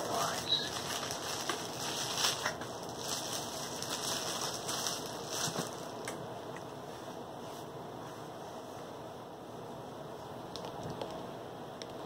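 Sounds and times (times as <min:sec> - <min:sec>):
packaging rustling and crinkling: 0:00.0 - 0:06.1.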